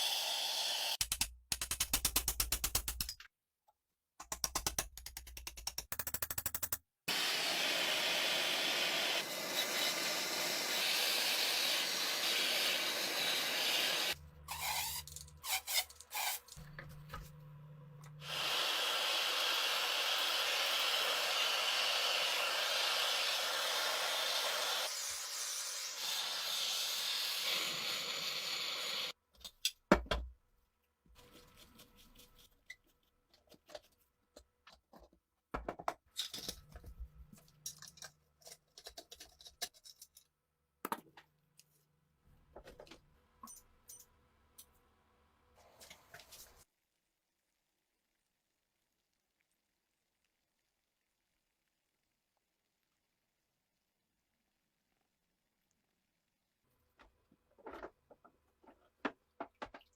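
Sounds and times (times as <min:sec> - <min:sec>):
power tool buzzing: 0:07.1 - 0:14.2.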